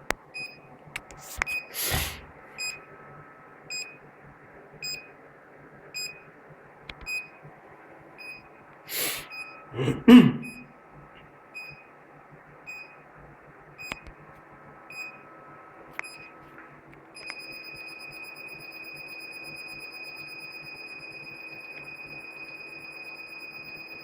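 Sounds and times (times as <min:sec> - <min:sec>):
steady alarm tone: 0:17.3 - 0:24.0.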